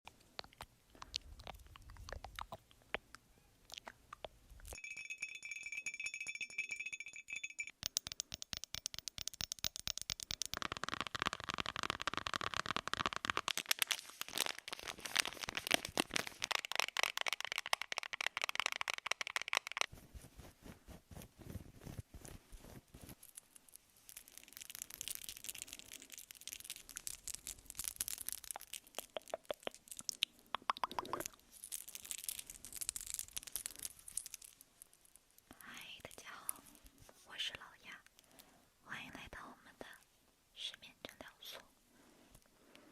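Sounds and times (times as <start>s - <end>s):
steady ringing tone: 4.8s - 7.7s
crackling rustling and clicking: 8.2s - 37.2s.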